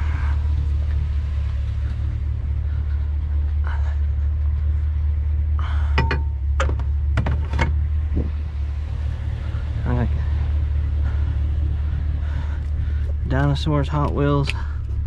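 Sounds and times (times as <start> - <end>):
vehicle engine idling: 0.0 - 15.0
sharp knocks and clicks: 6.0 - 7.8.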